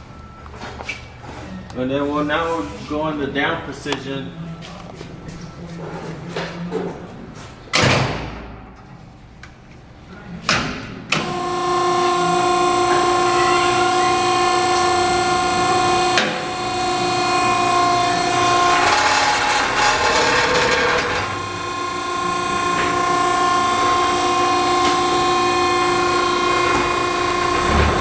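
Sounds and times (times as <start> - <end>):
electric motor and hydraulic pump whine: 11.1 - 28.0
loud metallic clanks: 17.2 - 22.0, 24.8 - 28.0.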